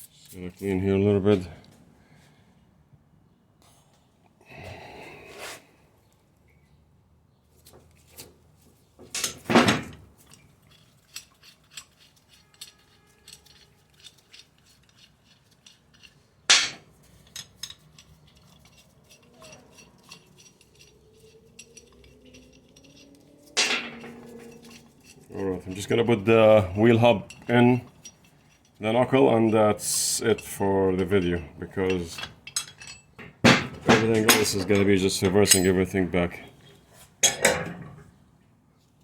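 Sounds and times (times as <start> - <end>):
metal tools clinking and knocking: 9.0 - 38.1.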